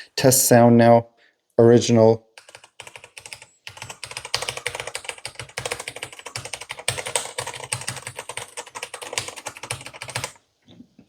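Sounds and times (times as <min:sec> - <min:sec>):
mechanical keyboard typing: 0:02.4 - 0:10.4.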